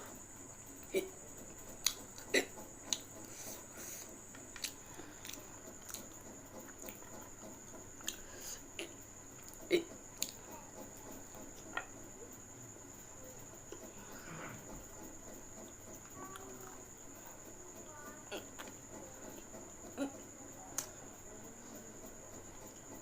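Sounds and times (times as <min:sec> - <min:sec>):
faint high-pitched whine: 0:00.0 - 0:23.0
mouth clicks and smacks: 0:00.8 - 0:10.4
person chewing: 0:01.8 - 0:03.6, 0:04.4 - 0:07.2, 0:08.0 - 0:10.4.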